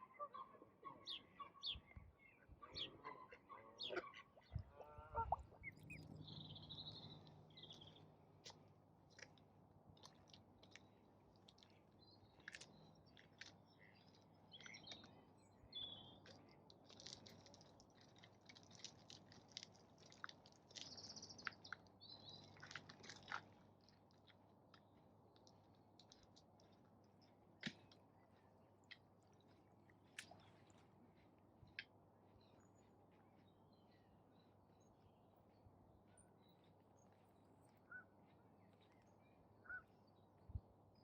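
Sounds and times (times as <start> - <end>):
light bird chirps: 5.3 - 9.4, 10.0 - 24.0
ducks feeding bill snaps: 7.2 - 15.2, 16.2 - 30.9.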